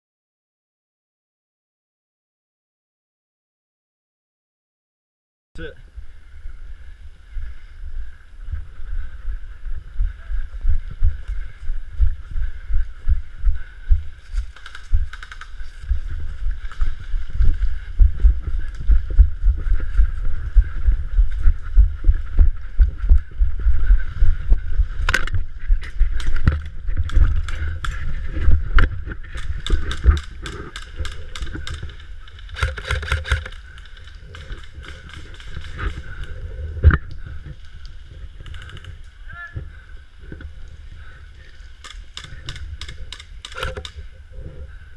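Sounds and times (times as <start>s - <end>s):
sharp clicks: 14.4s - 15.8s, 28.8s - 39.2s, 41.8s - 44.1s.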